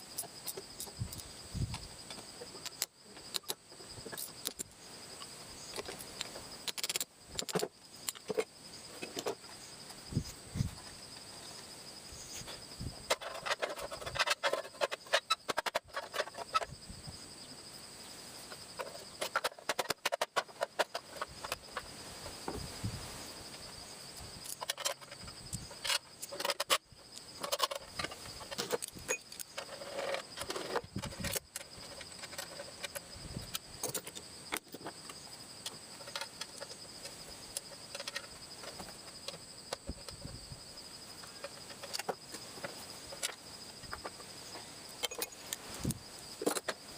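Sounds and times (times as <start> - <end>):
crickets chirping: 0.0 - 46.9
metal tools clinking: 27.4 - 33.1, 45.0 - 45.5.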